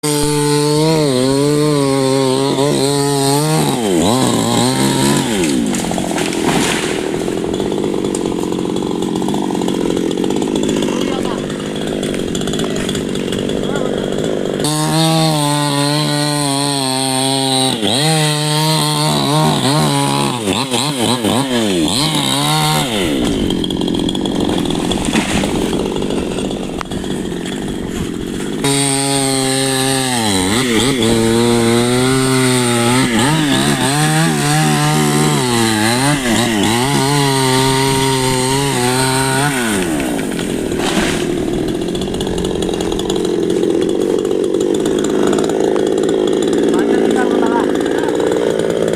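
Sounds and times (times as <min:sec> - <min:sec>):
chainsaw cutting wood: 0:00.0 - 0:48.9.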